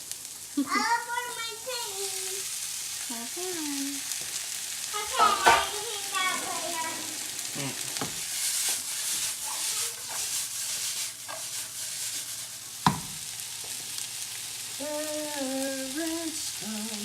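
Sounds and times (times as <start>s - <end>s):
food sizzling in a pan: 0.0s - 17.0s
sharp knock: 12.8s - 13.1s.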